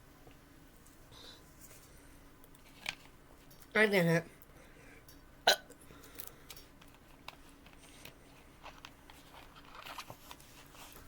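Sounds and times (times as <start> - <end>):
light handling noises: 6.0 - 11.0.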